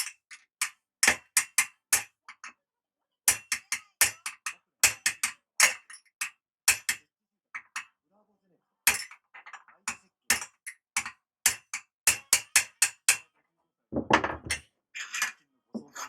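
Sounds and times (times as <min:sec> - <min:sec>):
hammer knocking on metal: 0:14.0 - 0:14.6.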